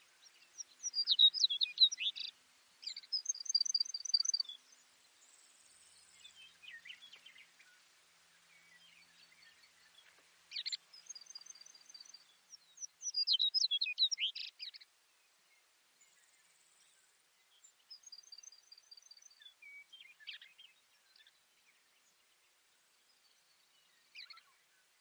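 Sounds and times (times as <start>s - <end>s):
sparrow singing: 0.2s - 7.8s, 8.6s - 14.9s, 23.2s - 24.6s.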